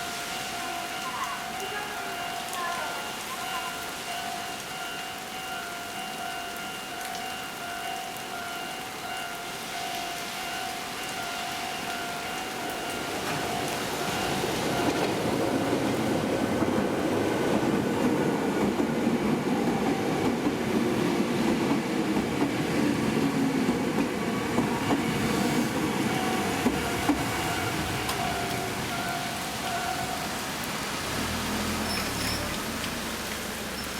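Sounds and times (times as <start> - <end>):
train wheels rumbling on rail: 11.1 - 33.9.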